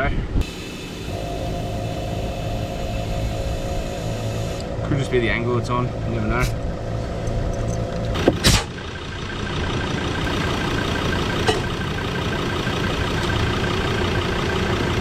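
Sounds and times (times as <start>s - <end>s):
air compressor drone: 0.4s - 5.0s, 8.1s - 15.0s.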